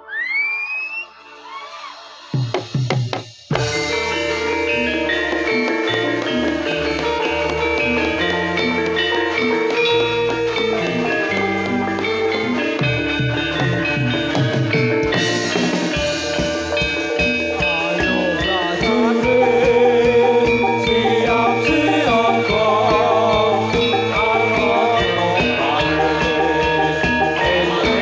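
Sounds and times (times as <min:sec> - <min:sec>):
steady drum beat: 0:02.2 - 0:28.0
metallophones ringing: 0:03.5 - 0:28.0
person singing wavering vocal: 0:17.5 - 0:28.0.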